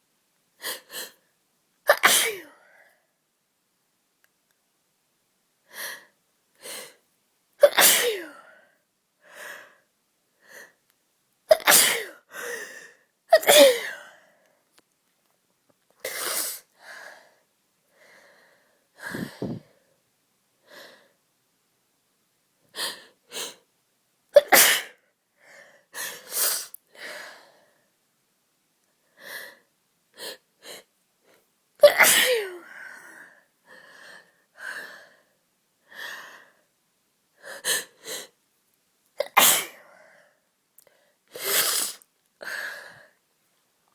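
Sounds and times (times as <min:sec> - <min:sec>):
person sneezing: 0:01.9 - 0:02.5, 0:07.6 - 0:08.4, 0:11.5 - 0:12.2, 0:13.3 - 0:14.0, 0:24.4 - 0:25.0, 0:31.8 - 0:32.6, 0:39.2 - 0:39.8
catches of breath: 0:18.0 - 0:19.8.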